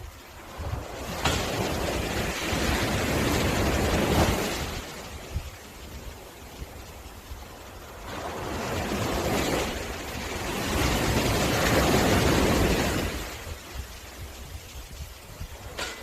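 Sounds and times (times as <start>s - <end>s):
sea waves washing on beach: 0.0s - 16.0s.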